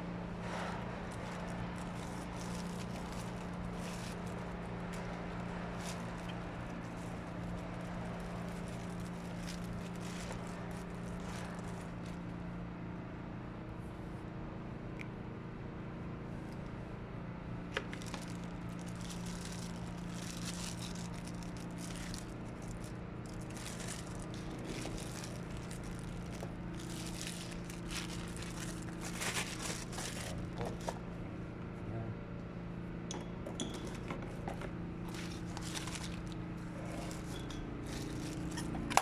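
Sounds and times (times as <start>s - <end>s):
low electrical hum: 0.0s - 39.0s
crackling and scraping on metal: 0.4s - 12.2s, 17.8s - 31.0s, 34.5s - 39.0s.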